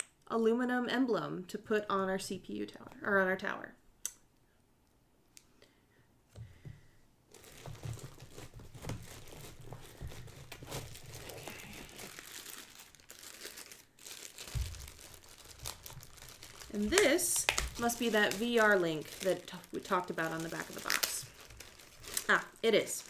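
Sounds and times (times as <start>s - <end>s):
packaging crinkling: 7.3s - 23.0s.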